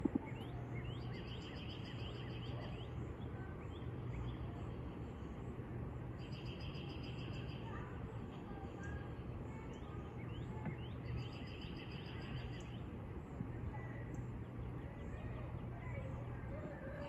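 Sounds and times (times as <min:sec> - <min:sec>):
bird chirps: 0:00.0 - 0:04.6, 0:06.2 - 0:07.9, 0:09.6 - 0:13.0.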